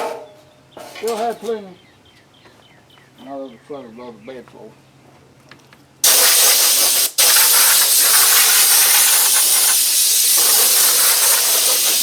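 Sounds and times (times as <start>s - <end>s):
hiss of rushing air: 6.0s - 12.0s.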